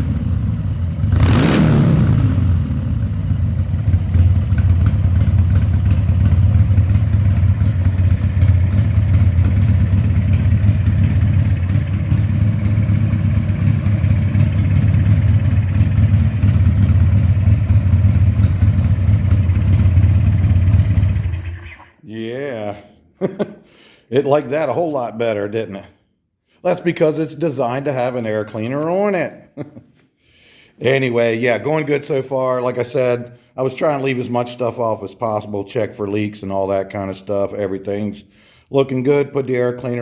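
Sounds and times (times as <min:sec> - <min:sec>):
engine revving burst: 0:00.0 - 0:03.1
motorcycle engine idling: 0:00.0 - 0:21.8.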